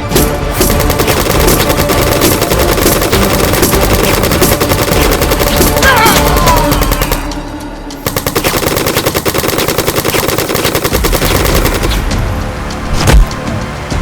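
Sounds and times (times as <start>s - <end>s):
rapid automatic gunfire: 0.5s - 7.4s, 8.0s - 12.2s.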